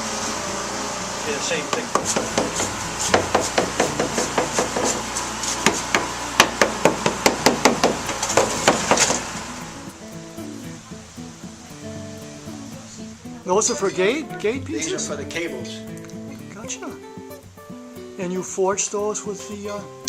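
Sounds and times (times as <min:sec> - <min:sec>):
background music: 0:00.0 - 0:20.0
hammer blows on wood: 0:01.7 - 0:09.4.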